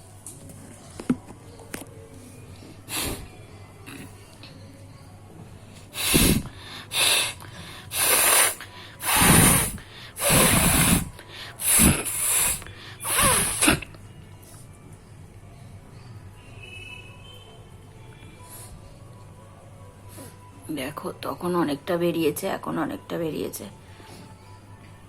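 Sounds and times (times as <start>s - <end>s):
person blowing nose: 2.9s - 3.3s, 6.0s - 13.9s.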